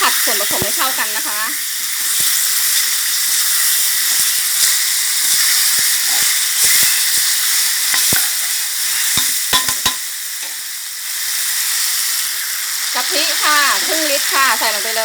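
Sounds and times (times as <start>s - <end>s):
food sizzling in hot oil: 0.0s - 15.0s
spatula clacking against pan: 9.2s - 10.0s.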